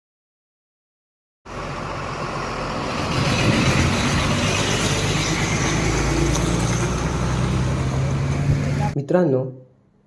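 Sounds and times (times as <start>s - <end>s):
low engine hum: 1.5s - 9.0s
rushing noise: 1.5s - 9.0s.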